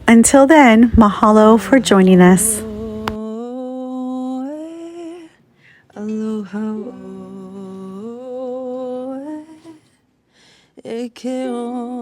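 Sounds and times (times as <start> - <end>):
person singing long held notes: 2.6 - 9.9.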